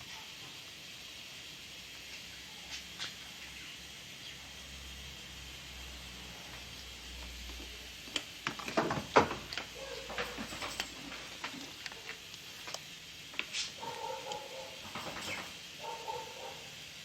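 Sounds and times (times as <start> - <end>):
tools clicking and knocking: 7.2 - 13.5, 14.3 - 15.7.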